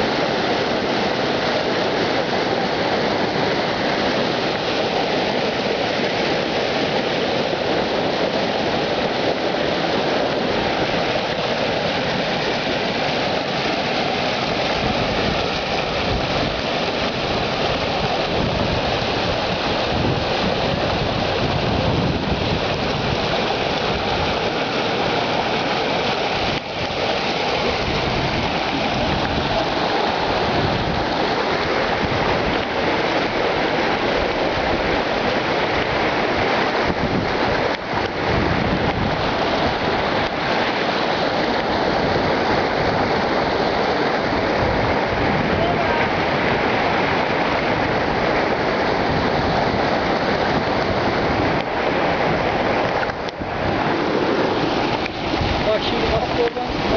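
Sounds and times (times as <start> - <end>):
waterfall rushing: 0.0 - 56.9.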